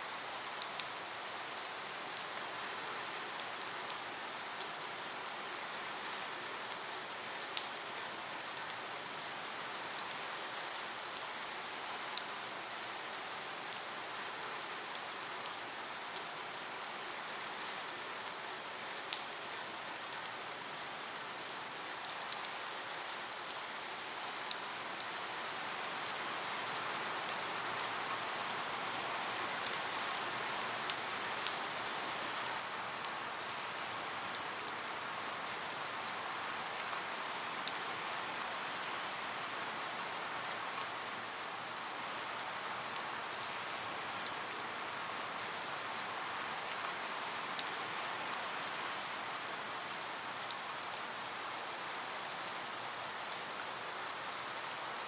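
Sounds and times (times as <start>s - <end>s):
steady rain with drop ticks: 0.0s - 55.0s.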